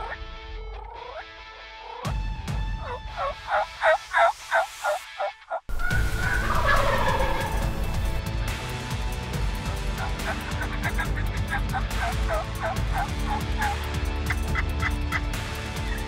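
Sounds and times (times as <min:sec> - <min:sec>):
turkeys gobbling: 0:02.8 - 0:08.2, 0:09.6 - 0:16.0.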